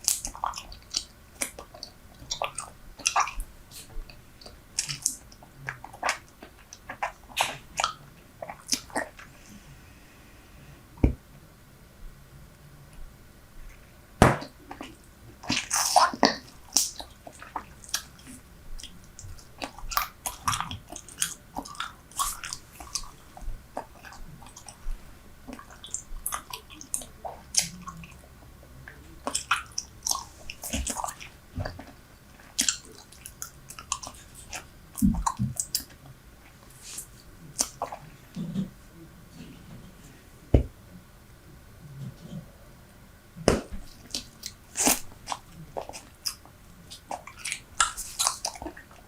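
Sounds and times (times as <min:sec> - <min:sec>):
gum chewing with wet smacks: 0:00.0 - 0:09.3, 0:14.6 - 0:38.8, 0:43.4 - 0:49.0.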